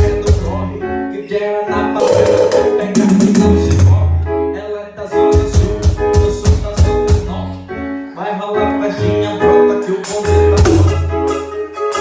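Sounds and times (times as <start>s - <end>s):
drum kit played along: 0.0s - 0.7s, 1.9s - 4.2s, 5.2s - 7.4s, 9.6s - 12.0s
song with bass keyboard and drums: 0.0s - 12.0s.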